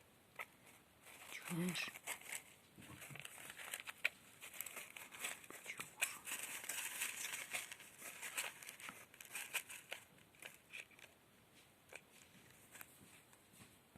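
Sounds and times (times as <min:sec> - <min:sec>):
plastic bag crinkling: 0:01.0 - 0:11.2.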